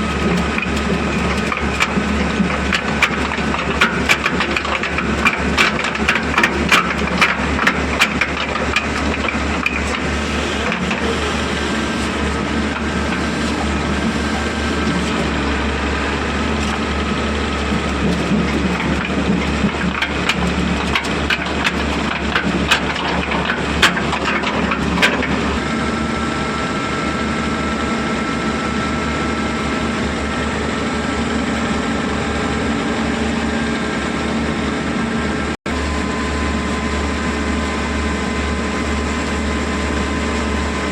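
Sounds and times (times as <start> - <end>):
sharp clicks and knocks: 0.0 - 11.2, 16.5 - 25.6
heavy diesel machinery rumbling: 0.0 - 40.9.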